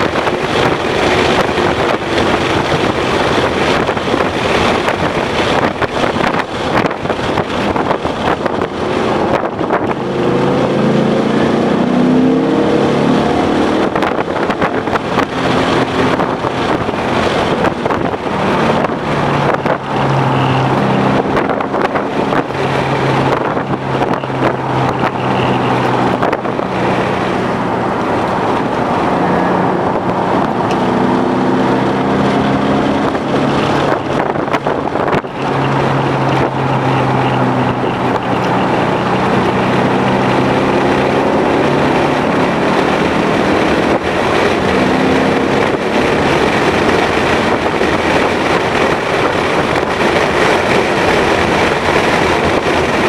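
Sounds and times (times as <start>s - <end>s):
car engine revving hard: 0.0s - 53.0s
wind noise on microphone: 0.0s - 53.0s.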